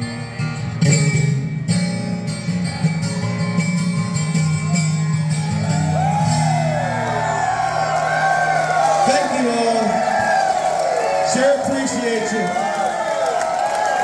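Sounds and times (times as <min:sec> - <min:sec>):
audience whooping and cheering: 0:03.3 - 0:14.0.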